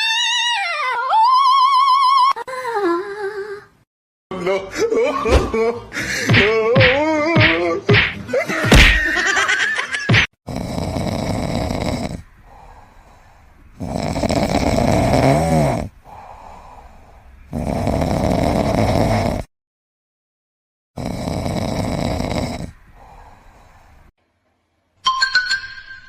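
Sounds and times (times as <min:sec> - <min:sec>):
pet snoring loudly: 0:10.5 - 0:12.8, 0:13.7 - 0:19.5, 0:21.0 - 0:23.7
quiet breaths: 0:10.8 - 0:19.5, 0:21.3 - 0:24.1.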